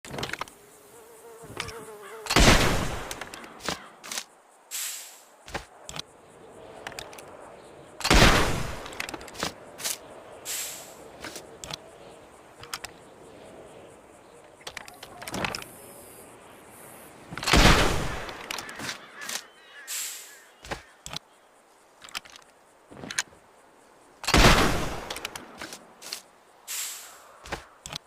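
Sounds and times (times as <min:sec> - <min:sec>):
short high hissing: 0:04.7 - 0:05.3, 0:10.5 - 0:11.0, 0:19.9 - 0:20.5, 0:26.7 - 0:27.3
sharp clicks: 0:06.8 - 0:07.3, 0:12.6 - 0:13.0, 0:14.6 - 0:15.8, 0:24.2 - 0:28.0
musket shots: 0:08.0 - 0:09.5, 0:17.4 - 0:18.4, 0:24.2 - 0:25.4.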